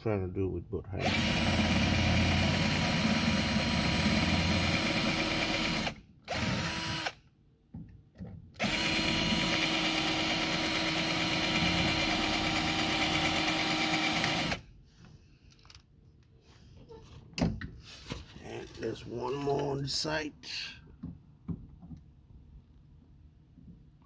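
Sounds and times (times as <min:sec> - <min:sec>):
power drill running: 0:01.0 - 0:07.2, 0:08.6 - 0:14.6.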